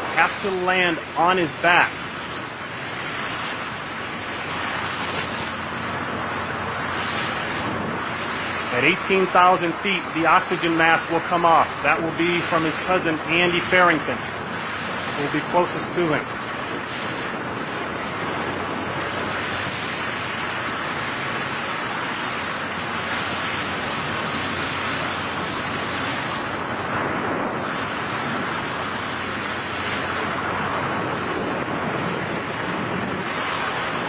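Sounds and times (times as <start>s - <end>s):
wind rushing on microphone: 0.0s - 34.0s.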